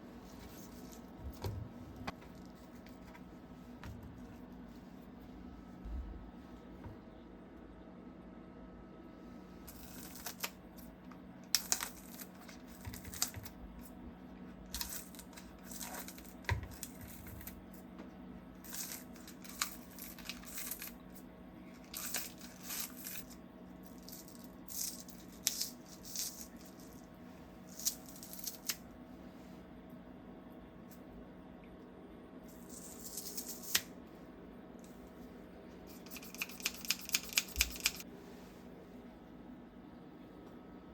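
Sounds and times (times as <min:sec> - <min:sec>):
crinkling and rustling: 0:00.1 - 0:05.0.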